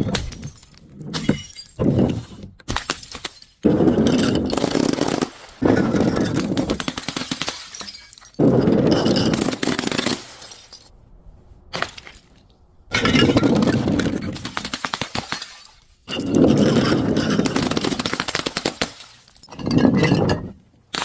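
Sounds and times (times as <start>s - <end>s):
glass bottles smashing: 0.0s - 10.9s, 11.8s - 14.5s, 15.1s - 21.0s
glass shards settling: 2.8s - 5.2s, 7.4s - 10.9s.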